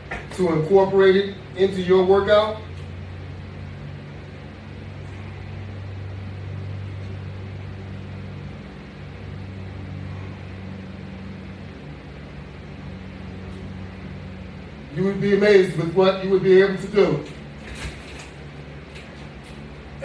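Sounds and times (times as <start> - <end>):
low hum: 0.0 - 20.0.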